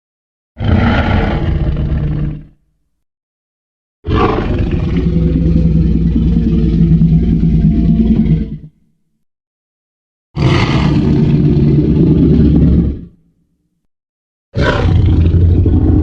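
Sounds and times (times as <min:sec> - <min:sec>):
dinosaur roar: 0:00.6 - 0:02.6, 0:04.0 - 0:08.7, 0:10.4 - 0:13.2, 0:14.6 - 0:16.0.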